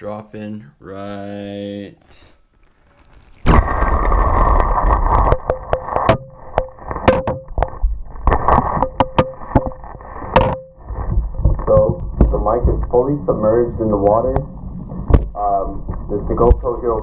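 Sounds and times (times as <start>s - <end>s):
underwater clicks and knocks: 5.1s - 13.0s.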